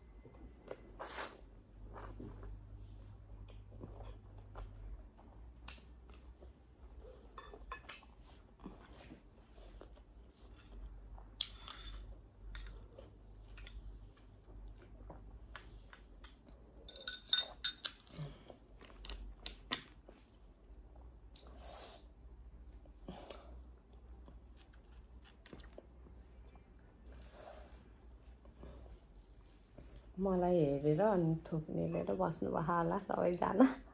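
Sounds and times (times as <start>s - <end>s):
person chewing food: 0.0s - 10.0s, 22.6s - 30.2s.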